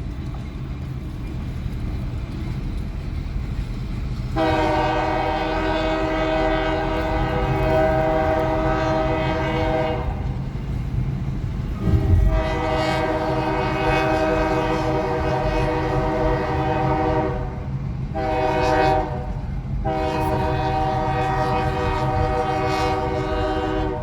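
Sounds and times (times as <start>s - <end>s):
passing train rumble: 0.0s - 24.0s
locomotive chime air horn: 4.4s - 10.3s, 11.8s - 17.6s, 18.2s - 24.0s.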